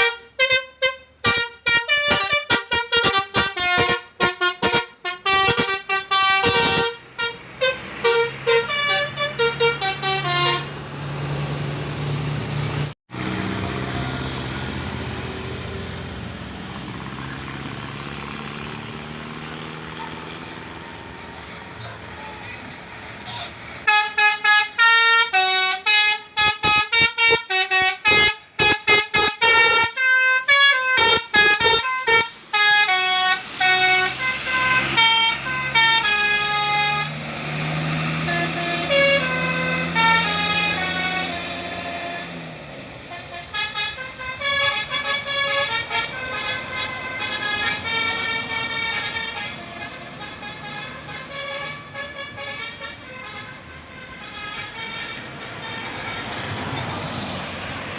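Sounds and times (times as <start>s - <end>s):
bus horn playing a tune: 0.0s - 11.4s, 20.0s - 57.1s.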